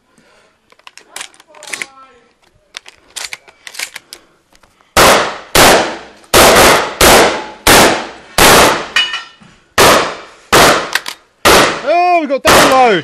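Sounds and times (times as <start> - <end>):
gun handling clicks: 0.6 - 4.9, 10.9 - 11.2
shotgun shots: 5.0 - 9.0, 9.8 - 13.0.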